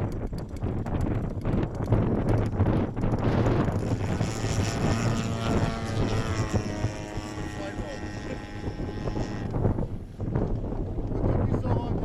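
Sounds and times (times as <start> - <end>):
model plane engine buzzing: 0.0 - 12.0
wind buffeting microphone: 0.0 - 12.0.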